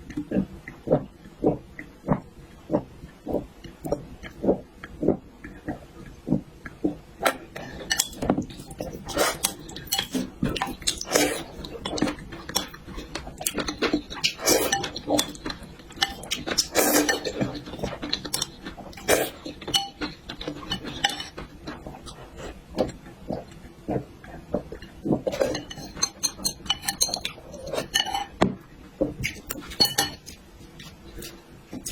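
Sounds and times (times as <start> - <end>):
chewing and slurping: 7.2 - 28.4, 29.1 - 31.9
cutlery clinking on dishes: 7.8 - 21.4, 25.3 - 28.4, 29.3 - 30.4.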